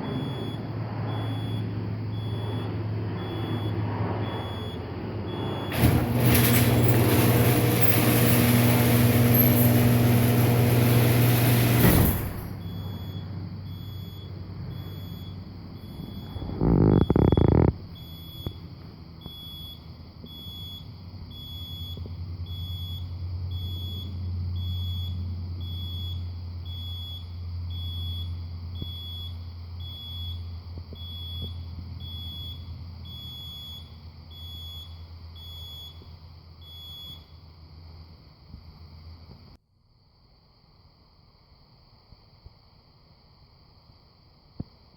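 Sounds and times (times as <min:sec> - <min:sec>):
warning beeps: 0:00.1 - 0:05.8, 0:12.6 - 0:18.6
garage door opener motor running: 0:05.3 - 0:13.2.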